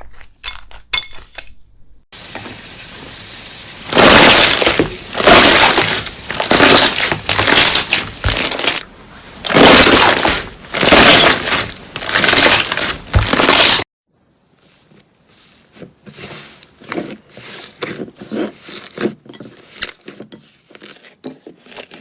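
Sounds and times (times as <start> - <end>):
crunchy slime being squeezed: 3.9 - 8.8, 9.4 - 13.8.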